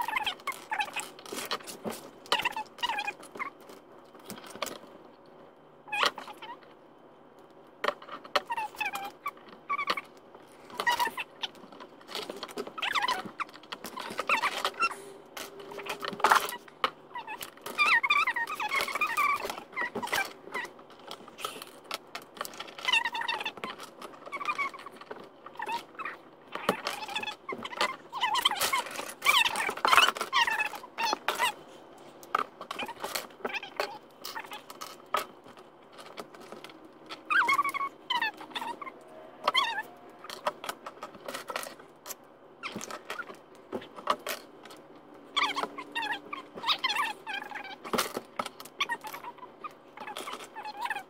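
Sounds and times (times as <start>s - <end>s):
plastic bricks rattling and clicking: 7.8s - 51.0s
short high squeaks: 37.1s - 41.8s.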